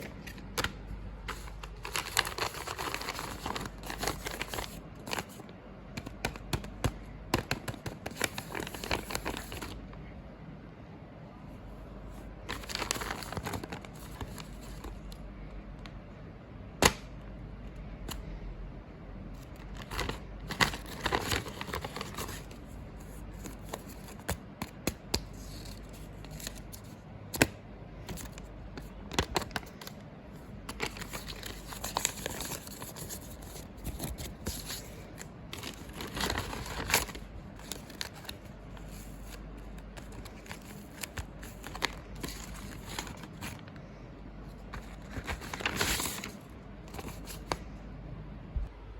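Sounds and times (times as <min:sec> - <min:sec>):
plastic packaging crinkling and tearing: 0:00.0 - 0:06.6, 0:07.4 - 0:09.8, 0:12.4 - 0:15.2, 0:19.4 - 0:27.5, 0:28.1 - 0:30.0, 0:30.6 - 0:43.8, 0:44.6 - 0:47.6.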